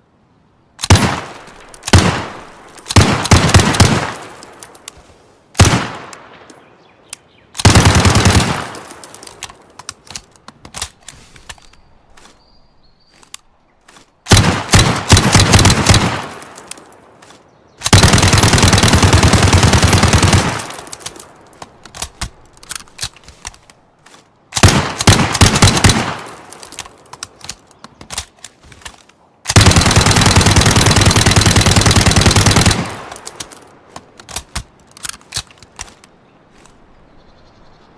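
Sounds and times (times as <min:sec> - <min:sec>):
submachine gun firing bursts: 0:00.8 - 0:04.2, 0:07.6 - 0:08.8, 0:14.3 - 0:16.4, 0:17.9 - 0:21.0, 0:24.6 - 0:26.3, 0:29.5 - 0:33.2.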